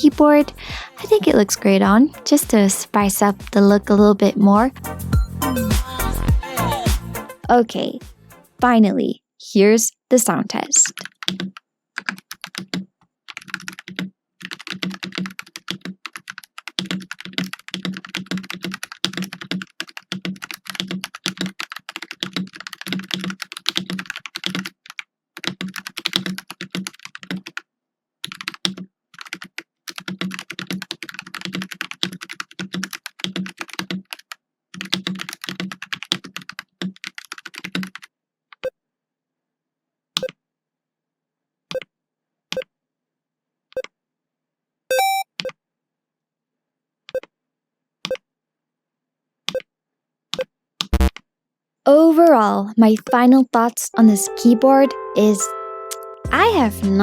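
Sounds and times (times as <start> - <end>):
fast typing on mechanical keyboard: 10.9 - 27.6, 28.2 - 38.1.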